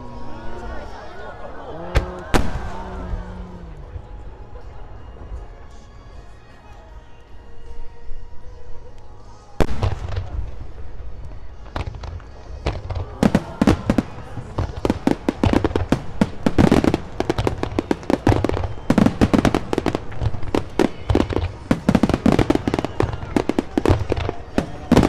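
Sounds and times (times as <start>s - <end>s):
fireworks bangs and crackles: 0.9s - 6.6s, 9.6s - 25.0s
fireworks booming: 1.8s - 4.6s, 9.6s - 25.0s.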